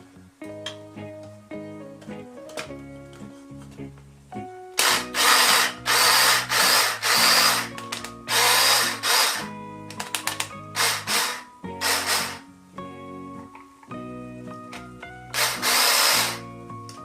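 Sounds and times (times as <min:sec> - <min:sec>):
background music: 0:00.0 - 0:17.0
small electric motor whirring: 0:04.8 - 0:07.7, 0:08.3 - 0:09.5, 0:10.8 - 0:12.4, 0:15.4 - 0:16.4.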